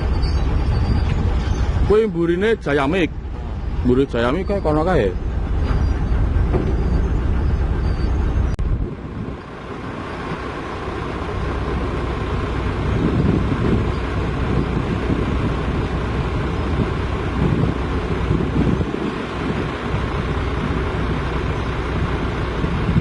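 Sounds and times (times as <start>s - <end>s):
diesel machinery rumbling: 0.0s - 23.0s.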